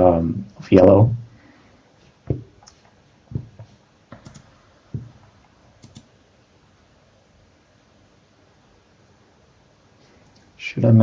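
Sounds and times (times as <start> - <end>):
keyboard and mouse clicks: 2.3 - 5.2, 5.8 - 6.1.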